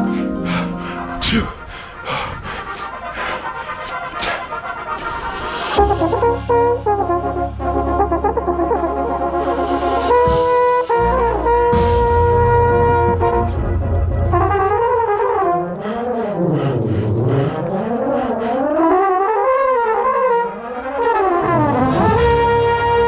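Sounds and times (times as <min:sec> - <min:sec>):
mellophone: 0:00.0 - 0:23.0
brass line playing chords: 0:03.0 - 0:16.3, 0:18.8 - 0:23.0.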